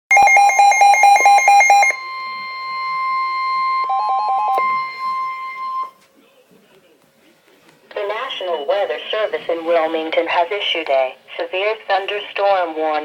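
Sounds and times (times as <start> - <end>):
shrill warning alarm tone: 0.1 - 6.0.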